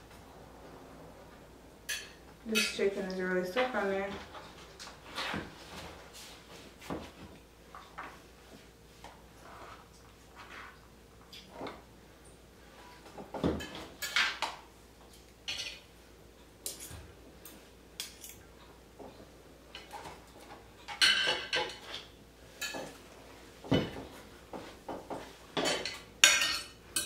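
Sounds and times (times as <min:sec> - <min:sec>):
cutlery scraping dishes: 0:15.5 - 0:15.8, 0:20.8 - 0:23.0, 0:25.0 - 0:27.0.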